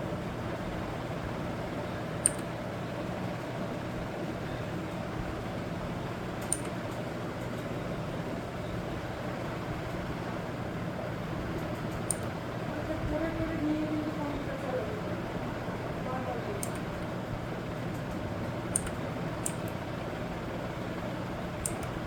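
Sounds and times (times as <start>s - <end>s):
background hum: 0.0s - 22.0s
keyboard key clicks: 2.2s - 2.5s, 6.4s - 6.8s, 11.9s - 12.4s, 16.6s - 16.9s, 18.7s - 19.8s, 21.6s - 22.0s.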